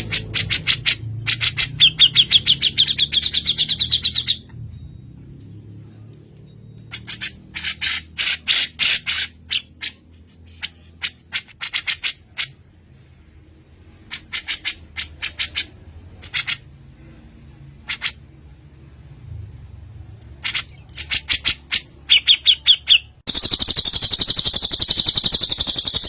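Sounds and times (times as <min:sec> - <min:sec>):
songbird harsh chattering: 0:20.4 - 0:26.0.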